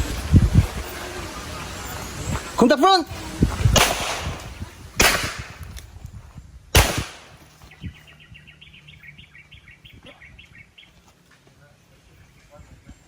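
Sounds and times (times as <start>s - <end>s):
handgun shots with echo: 3.8s - 5.8s, 6.8s - 7.5s.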